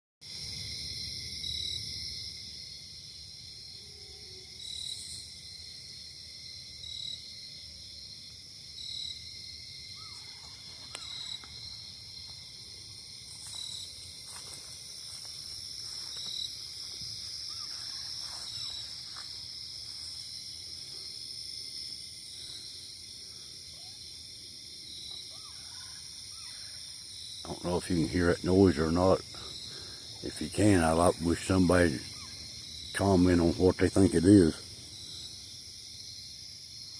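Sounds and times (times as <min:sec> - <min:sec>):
crickets and insects chorus: 0:00.2 - 0:36.9
faint gliding calls: 0:09.9 - 0:21.1.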